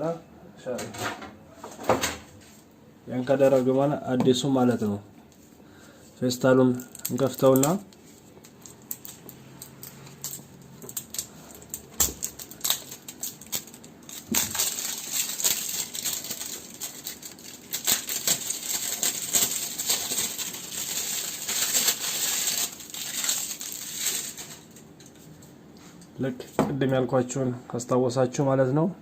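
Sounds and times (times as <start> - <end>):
plastic bag crinkling: 6.2 - 25.2.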